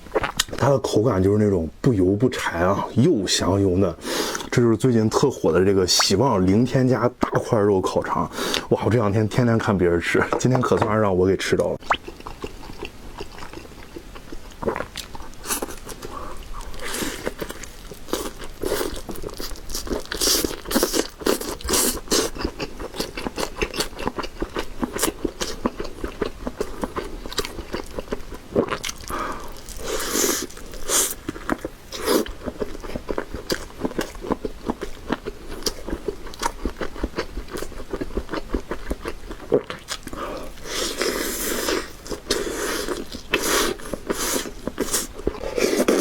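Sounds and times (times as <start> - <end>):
biting and chewing sausage: 11.8 - 46.0.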